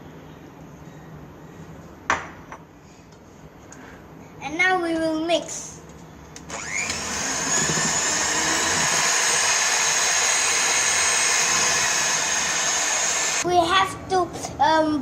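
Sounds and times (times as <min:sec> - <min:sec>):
electric mixer whirring: 0:06.4 - 0:13.4.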